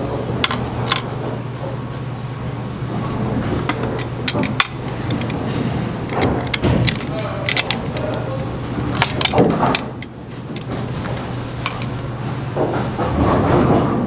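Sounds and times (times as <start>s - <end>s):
pinsetter machinery humming: 0.0s - 14.0s
sharp metallic clicks and clanks: 3.6s - 12.1s.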